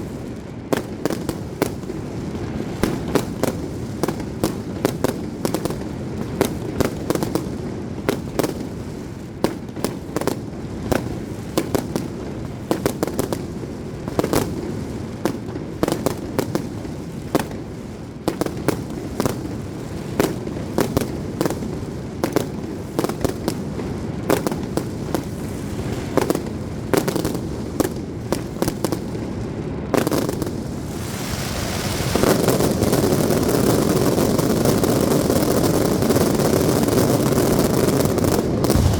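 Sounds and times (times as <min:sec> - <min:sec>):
fireworks bangs and pops: 0:00.0 - 0:38.9
low rumble: 0:38.7 - 0:38.9
steady rushing noise: 0:38.7 - 0:38.9.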